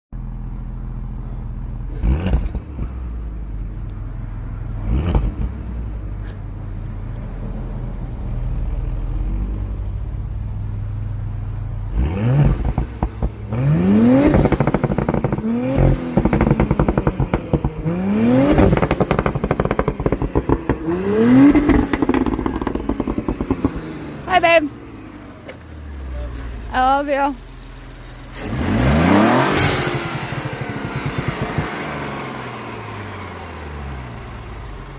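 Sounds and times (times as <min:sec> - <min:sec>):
car engine idling and revving: 0:00.1 - 0:34.9
exhaust crackles and pops: 0:12.4 - 0:24.7, 0:29.3 - 0:32.4.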